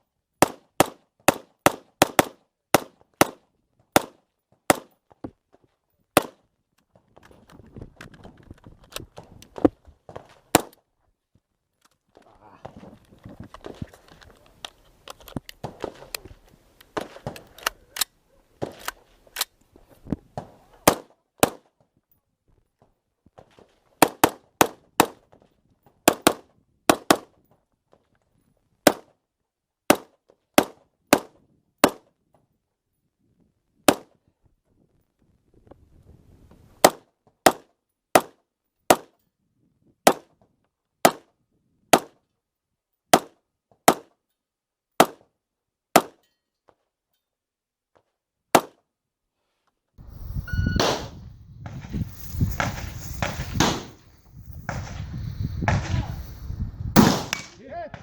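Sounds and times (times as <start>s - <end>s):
rifle shots: 50.5s - 51.9s, 52.5s - 56.3s, 57.0s - 57.6s.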